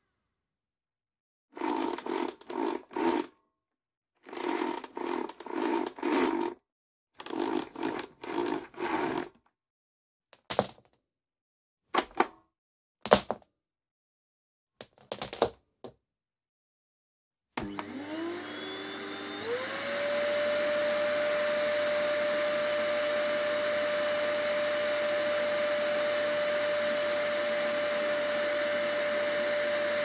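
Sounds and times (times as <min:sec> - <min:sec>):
vacuum cleaner bursts: 0:17.6 - 0:30.0.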